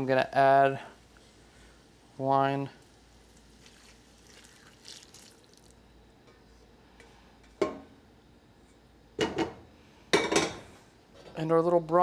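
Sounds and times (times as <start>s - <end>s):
wine pouring into pot: 2.6s - 5.8s.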